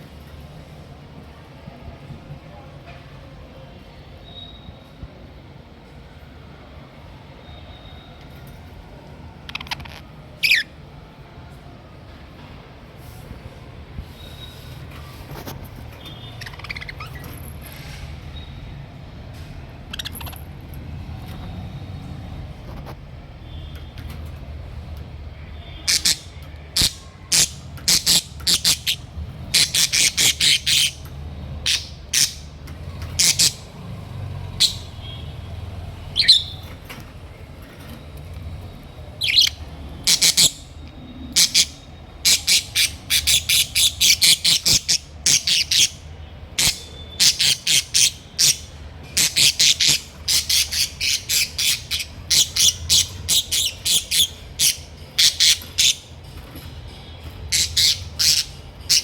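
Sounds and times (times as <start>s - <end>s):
parrots squawking: 9.5s - 10.8s, 16.2s - 17.5s, 19.9s - 20.5s, 25.8s - 33.7s, 34.5s - 35.0s, 36.1s - 36.6s, 39.2s - 56.1s, 57.5s - 59.0s.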